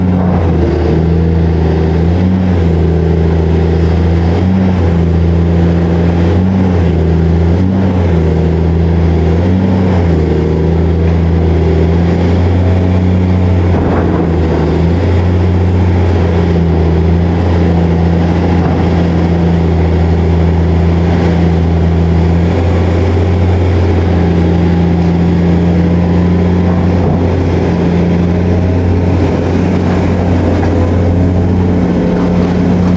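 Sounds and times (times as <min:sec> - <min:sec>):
excavator diesel engine working: 0:00.0 - 0:32.9.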